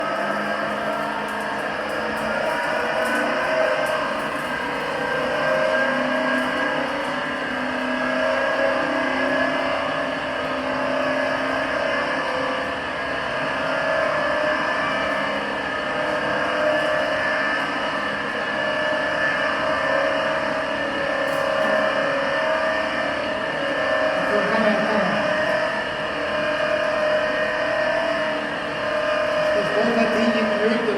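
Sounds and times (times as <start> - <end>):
hand-cranked ventilation fan: 0.0 - 30.9.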